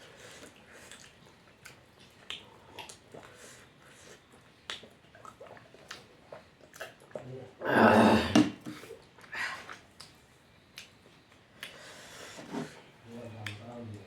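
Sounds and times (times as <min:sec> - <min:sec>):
mouth smacks and clicks eating: 0:00.4 - 0:07.3, 0:09.7 - 0:11.8.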